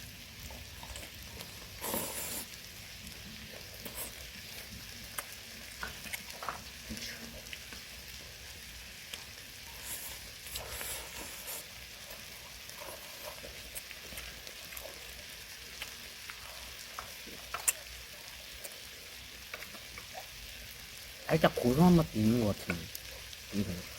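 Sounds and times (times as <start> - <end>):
meat sizzling on a grill pan: 0.0 - 23.9.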